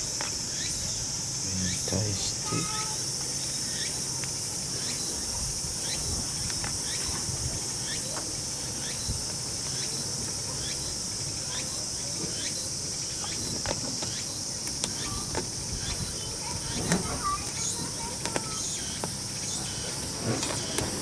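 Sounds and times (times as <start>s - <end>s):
crickets chirping: 0.0s - 21.0s.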